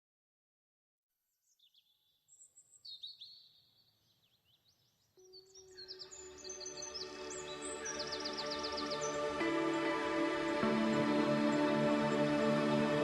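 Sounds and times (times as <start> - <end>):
birds chirping: 1.5 - 13.0
held musical chord: 5.9 - 13.0.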